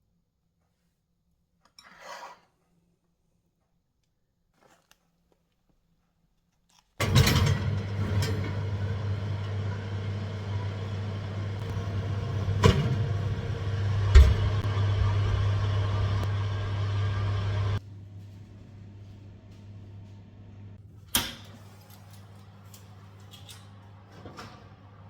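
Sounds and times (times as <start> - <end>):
electric motor hum: 7.0 - 17.8.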